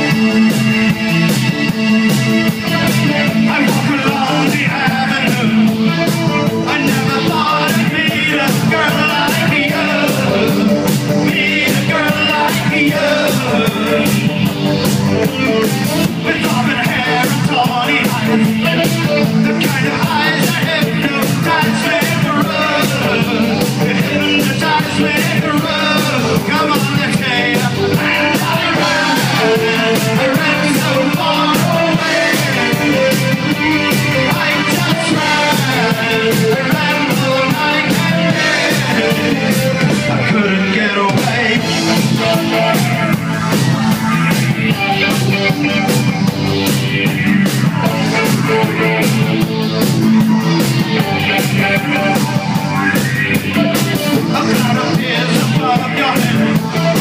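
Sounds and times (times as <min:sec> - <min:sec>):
driving drum beat: 0:00.0 - 0:57.0
electric guitar: 0:00.0 - 0:57.0
keyboards: 0:00.0 - 0:57.0.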